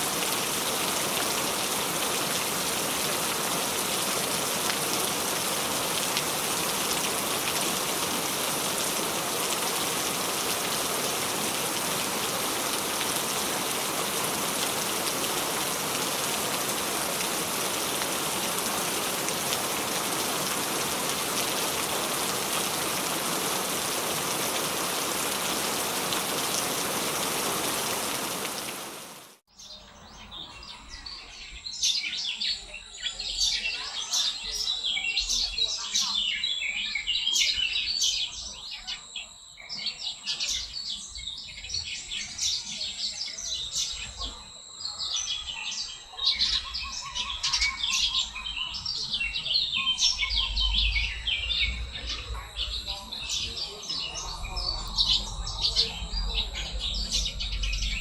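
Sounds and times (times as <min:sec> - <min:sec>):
heavy rain hissing: 0:00.0 - 0:29.4, 0:50.0 - 0:58.0.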